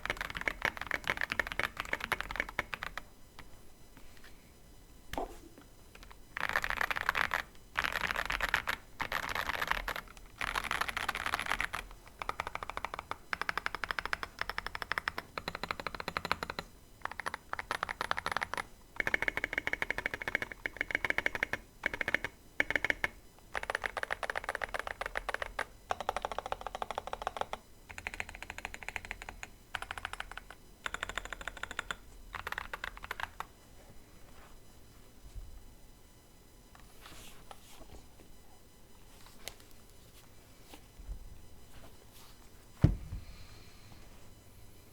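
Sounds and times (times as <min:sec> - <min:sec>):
fast typing on mechanical keyboard: 0:00.0 - 0:03.1, 0:06.0 - 0:33.5.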